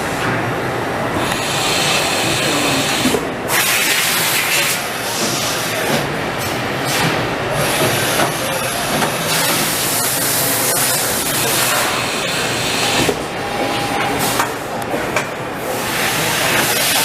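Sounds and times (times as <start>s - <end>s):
machine coolant hiss: 1.2s - 13.1s.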